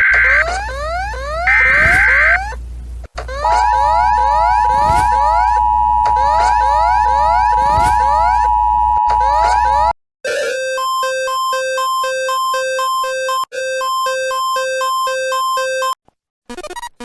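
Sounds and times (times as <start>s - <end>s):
electronic siren whooping: 0.0s - 2.6s, 3.3s - 13.3s
low hum: 0.1s - 9.9s.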